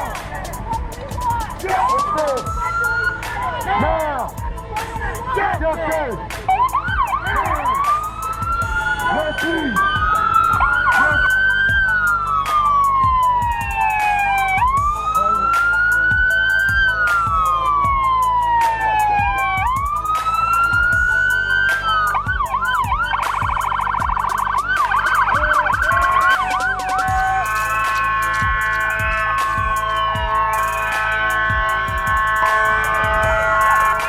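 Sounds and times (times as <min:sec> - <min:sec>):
police siren wailing and yelping: 0:00.0 - 0:04.4, 0:05.2 - 0:34.0.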